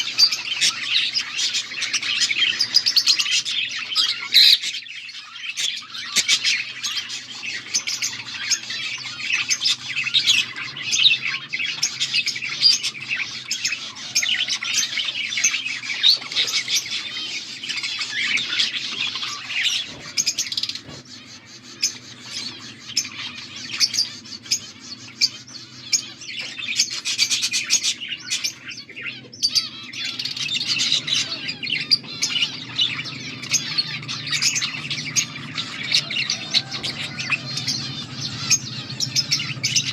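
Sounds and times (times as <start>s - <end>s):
bird squawks: 0.0s - 39.9s
budgerigars chirping: 0.0s - 39.9s.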